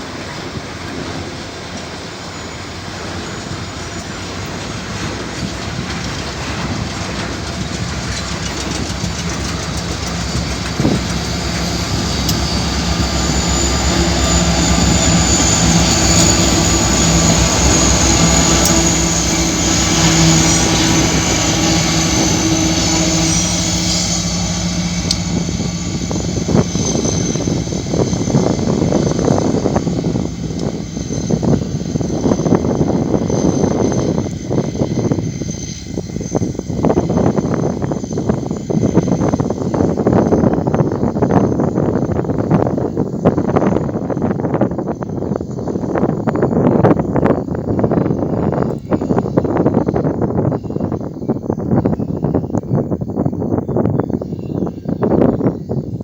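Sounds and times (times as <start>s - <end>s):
wheels clattering over rail joints: 0.0s - 44.6s
diesel locomotive engines droning: 0.0s - 56.0s
high wheel squeal: 0.0s - 56.0s.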